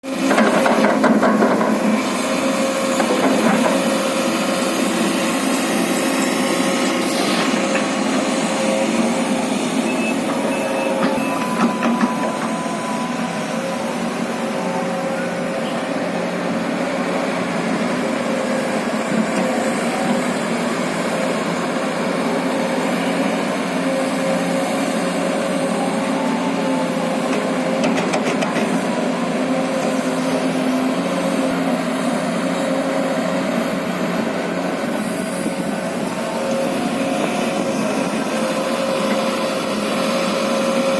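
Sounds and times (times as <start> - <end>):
excavator running: 0.0 - 40.9.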